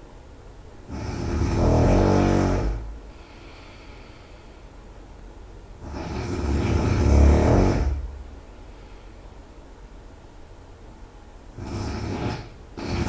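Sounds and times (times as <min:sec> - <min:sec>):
person snoring loudly: 0:00.9 - 0:03.6, 0:05.8 - 0:08.2, 0:11.6 - 0:13.0.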